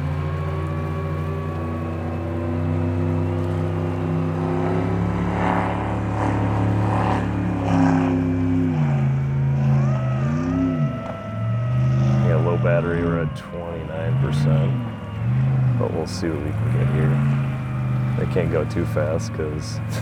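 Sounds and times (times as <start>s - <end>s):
motor drone with high whine: 0.0s - 20.0s.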